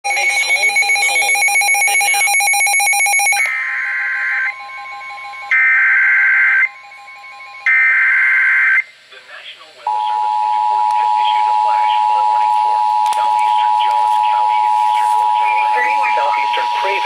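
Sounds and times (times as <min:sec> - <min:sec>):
harsh digital data tones: 0:00.1 - 0:08.9, 0:09.9 - 0:17.0
rapidly pulsing electronic tone: 0:00.1 - 0:08.9.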